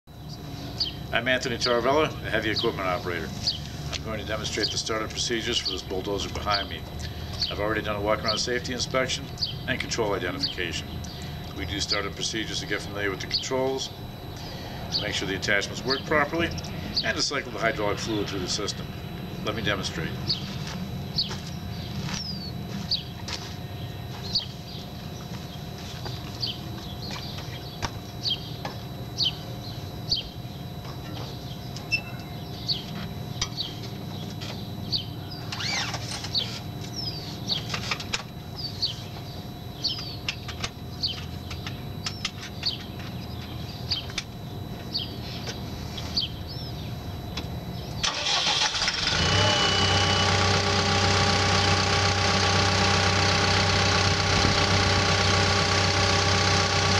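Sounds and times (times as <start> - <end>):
birds chirping: 0.1 - 56.9
diesel engine cranking and idling: 48.0 - 56.9.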